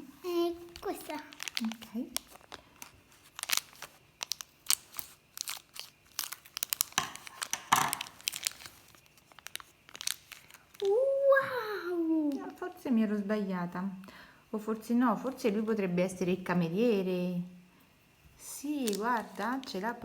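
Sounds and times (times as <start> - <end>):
plastic packaging crinkling: 0.3 - 11.0, 18.4 - 20.0
plastic packaging tearing: 0.7 - 11.0, 18.7 - 20.0.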